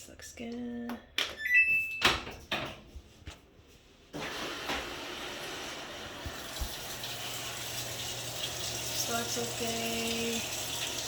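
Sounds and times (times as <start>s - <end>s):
water rushing into washing machine: 4.2s - 11.0s.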